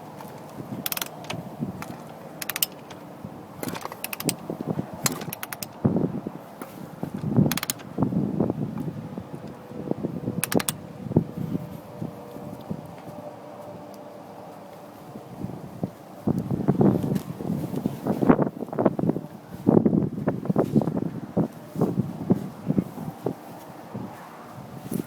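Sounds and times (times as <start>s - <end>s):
motorcycle kick-starter kicked: 0.2s - 3.0s, 3.6s - 5.8s, 6.6s - 7.9s, 10.4s - 10.8s
ratcheting clicks: 0.4s - 3.0s, 3.6s - 5.8s, 7.5s - 7.9s, 10.4s - 10.8s
engine turning over: 0.5s - 5.8s, 7.4s - 7.9s, 10.4s - 10.8s.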